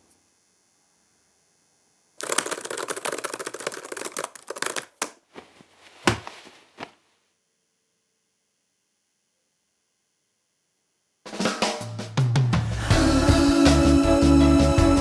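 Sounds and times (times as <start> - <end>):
dense crackling rustling: 2.2 - 7.0.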